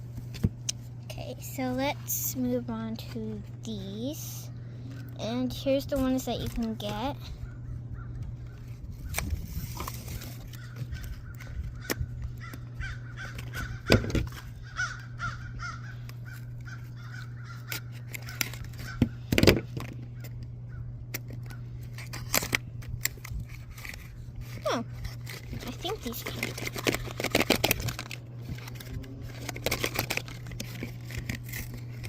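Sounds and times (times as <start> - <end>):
steady low hum: 0.0 - 32.0
plastic toy packs clicking and rustling: 17.6 - 20.0, 21.2 - 32.0.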